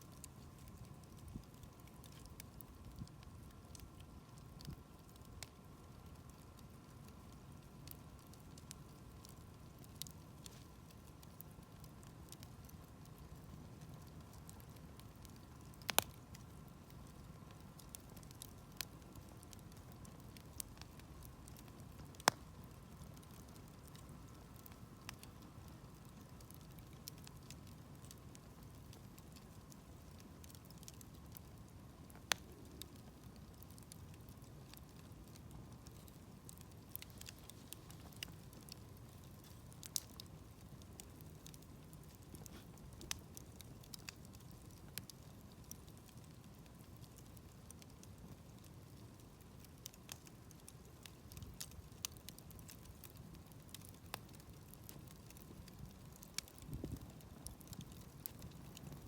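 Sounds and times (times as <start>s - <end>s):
wood campfire crackling: 0.0s - 59.0s.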